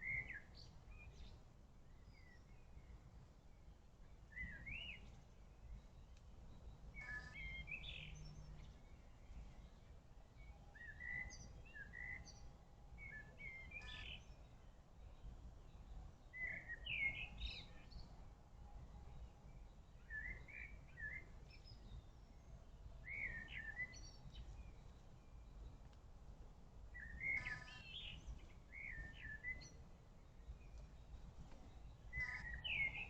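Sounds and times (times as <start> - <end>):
low rumble of wind: 0.0 - 33.0
bird singing warbled phrases: 10.8 - 12.4, 13.0 - 14.4, 27.0 - 29.8, 31.7 - 33.0.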